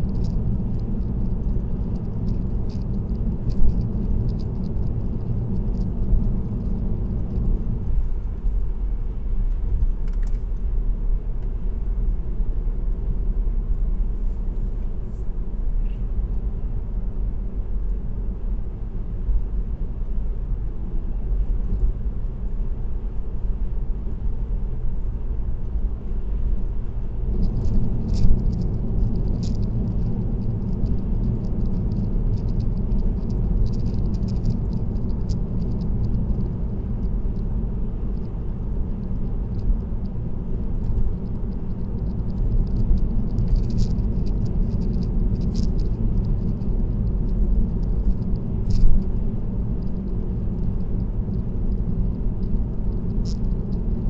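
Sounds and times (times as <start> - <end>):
tyre and road noise: 0.0 - 54.0
light fast rattling: 27.3 - 54.0.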